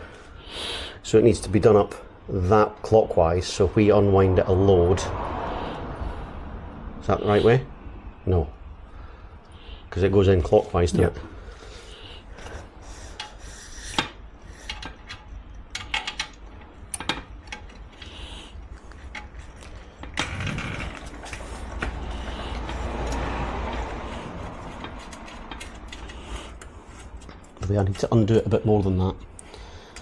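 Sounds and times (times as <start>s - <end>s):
metal clicks and knocks: 14.6s - 18.1s
rustling scraping handling noise: 17.5s - 28.5s.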